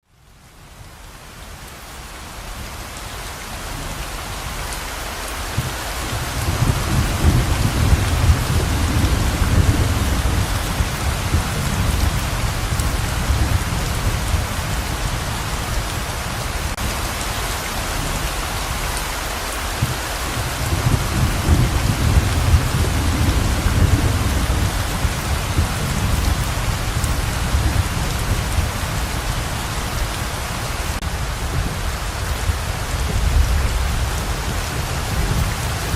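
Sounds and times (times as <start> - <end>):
heavy rain pouring: 0.0 - 35.9
low rolls of thunder: 5.5 - 17.2, 19.8 - 35.9.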